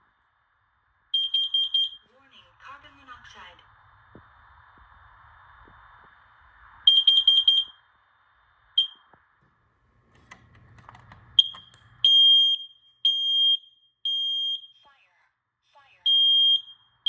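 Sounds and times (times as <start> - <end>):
long loud alarm beeps: 1.1 - 2.1, 6.9 - 7.8, 8.8 - 9.0, 11.4 - 14.9, 16.0 - 17.0
alarm chirp: 1.2 - 2.1, 6.9 - 7.8, 8.8 - 9.1, 11.4 - 15.0, 16.0 - 17.0
short high-pitched alarm beeps: 1.2 - 2.1, 6.9 - 7.8, 8.8 - 9.0, 11.4 - 14.9, 16.0 - 17.0.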